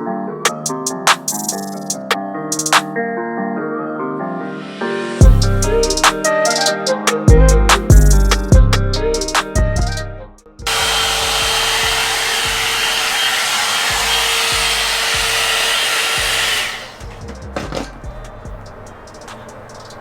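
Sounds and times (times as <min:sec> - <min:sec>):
music with drum beat: 0:00.5 - 0:02.9, 0:05.2 - 0:10.0, 0:11.6 - 0:13.0, 0:13.9 - 0:20.0
hot-air dryer brush blowing: 0:10.7 - 0:17.2.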